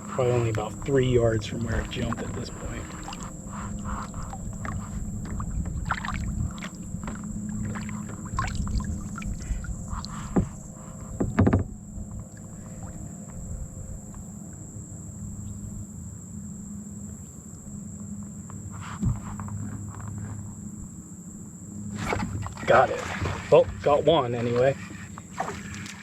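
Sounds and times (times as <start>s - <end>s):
wind rumbling on microphone: 0.0s - 16.2s, 19.0s - 21.1s
loud knocks: 11.2s - 11.8s.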